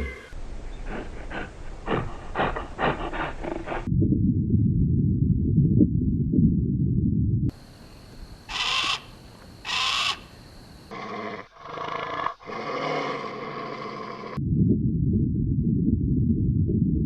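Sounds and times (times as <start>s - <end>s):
long pitched animal call: 8.5s - 10.3s
harsh animal calls: 8.5s - 14.4s.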